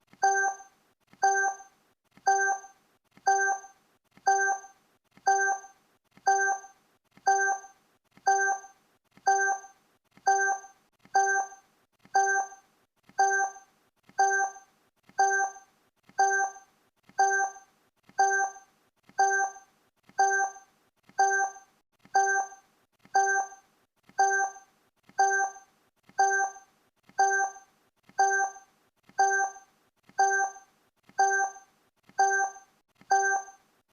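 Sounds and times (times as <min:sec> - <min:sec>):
countdown timer ticks: 0:00.2 - 0:01.7, 0:02.3 - 0:02.7, 0:03.3 - 0:03.7, 0:04.3 - 0:04.7, 0:05.3 - 0:05.7, 0:06.3 - 0:06.7, 0:07.3 - 0:07.7, 0:08.3 - 0:08.7, 0:09.3 - 0:09.7, 0:10.3 - 0:11.6, 0:12.2 - 0:12.6, 0:13.2 - 0:13.6, 0:14.2 - 0:14.6, 0:15.2 - 0:15.6, 0:16.2 - 0:16.6, 0:17.2 - 0:17.6, 0:18.2 - 0:18.6, 0:19.2 - 0:19.6, 0:20.2 - 0:20.6, 0:21.2 - 0:21.6, 0:22.2 - 0:22.6, 0:23.2 - 0:23.6, 0:24.2 - 0:24.6, 0:25.2 - 0:25.6, 0:26.2 - 0:26.6, 0:27.2 - 0:27.6, 0:28.2 - 0:28.6, 0:29.2 - 0:29.6, 0:30.2 - 0:30.6, 0:31.2 - 0:33.6.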